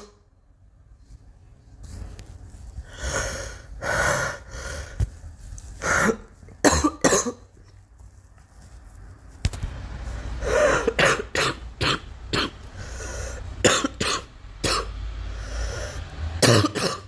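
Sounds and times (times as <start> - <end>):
girl breathing: 2.8 - 5.2, 5.8 - 6.3, 12.7 - 13.6, 15.2 - 16.2
girl coughing harshly: 5.8 - 7.5, 10.4 - 12.6, 13.6 - 14.9, 16.4 - 17.0.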